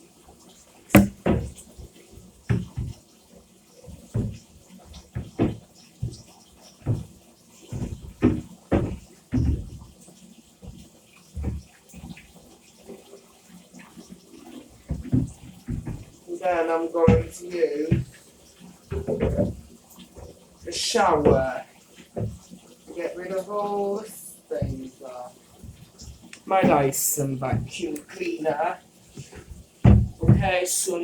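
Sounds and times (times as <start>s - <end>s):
water splashing: 0.8s - 31.0s
hard plastic knocks: 0.9s - 1.8s, 2.5s - 3.0s, 3.9s - 9.9s, 14.8s - 16.2s, 18.9s - 19.6s, 29.2s - 30.5s.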